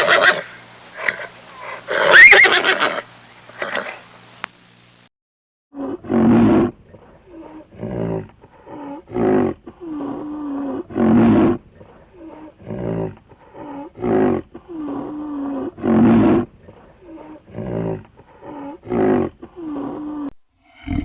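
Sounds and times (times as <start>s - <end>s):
large animal harsh calls: 0.0s - 4.1s
animal drawn-out breath: 7.0s - 10.7s, 11.7s - 15.6s, 16.5s - 19.8s.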